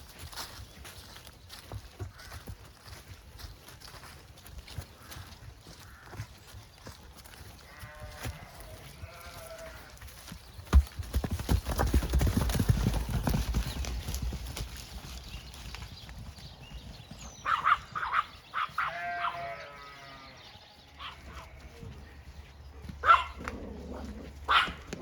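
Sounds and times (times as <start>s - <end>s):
farm animals calling: 1.5s - 3.0s, 3.8s - 10.3s, 17.1s - 25.0s.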